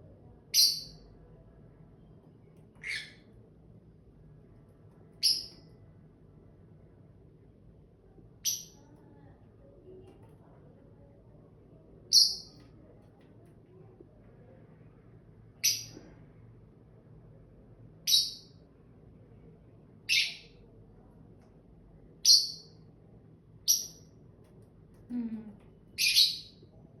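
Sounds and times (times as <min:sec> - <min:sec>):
parrot chirping: 0:00.5 - 0:01.0, 0:02.8 - 0:03.3, 0:05.2 - 0:05.6, 0:12.1 - 0:12.6, 0:18.0 - 0:18.5, 0:20.1 - 0:20.5, 0:22.2 - 0:22.8, 0:26.0 - 0:26.6.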